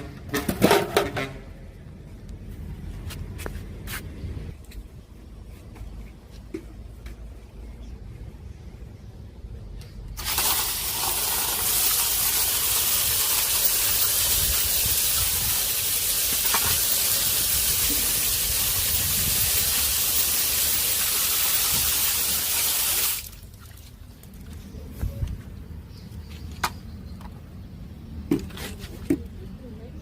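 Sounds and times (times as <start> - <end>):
loud steady hiss: 10.2 - 23.3.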